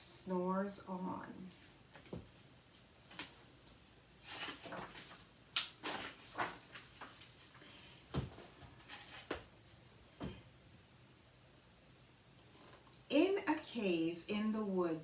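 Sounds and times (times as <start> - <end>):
book pages turning: 3.1 - 9.5.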